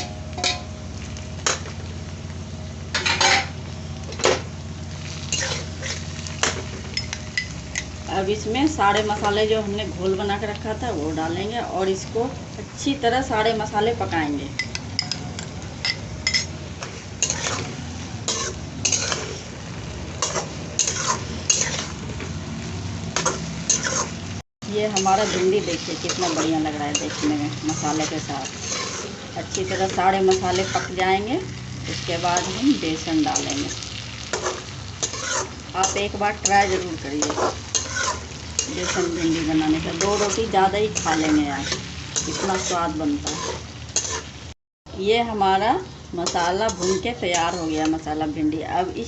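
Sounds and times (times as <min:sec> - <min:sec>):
spice paste sizzling in oil: 0:00.0 - 0:14.8, 0:15.6 - 0:49.0
spoon scraping a pan: 0:05.3 - 0:07.9, 0:14.6 - 0:19.5, 0:20.2 - 0:22.0, 0:23.2 - 0:24.2, 0:24.9 - 0:31.0, 0:31.9 - 0:44.4, 0:46.2 - 0:48.0.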